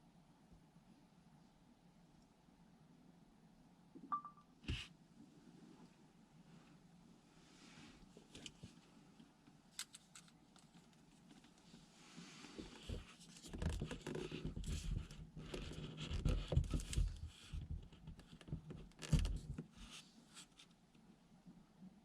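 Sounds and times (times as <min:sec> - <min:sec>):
rustling and scratching: 0:09.8 - 0:20.8.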